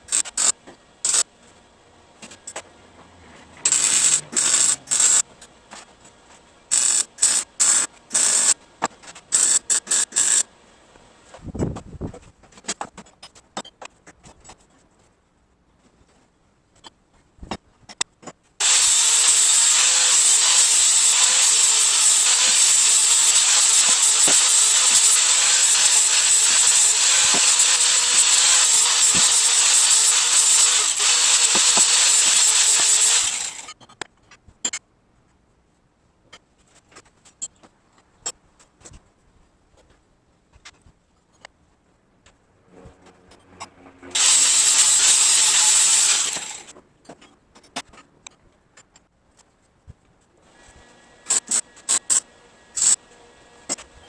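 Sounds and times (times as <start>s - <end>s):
power tool running: 0.0s - 1.2s, 3.6s - 5.2s, 6.7s - 8.6s, 9.3s - 10.5s, 18.6s - 33.8s, 44.0s - 46.7s, 50.6s - 53.8s.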